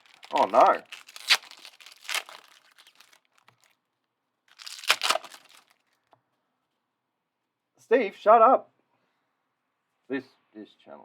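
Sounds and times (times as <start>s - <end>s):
foil wrapper crinkling and tearing: 0.0s - 3.8s, 4.5s - 6.0s.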